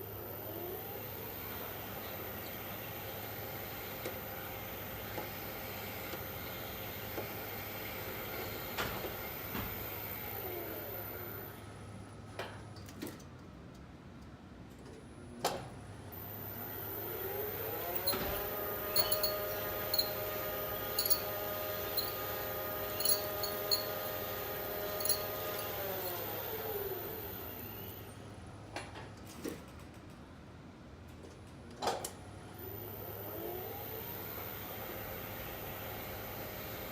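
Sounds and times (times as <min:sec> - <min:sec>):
lift drive motor whine: 0:00.1 - 0:03.2, 0:16.1 - 0:28.2, 0:32.5 - 0:36.7
lift brake noise: 0:17.8 - 0:24.2
lift machinery clicks and clunk: 0:17.9 - 0:20.2, 0:21.0 - 0:21.3.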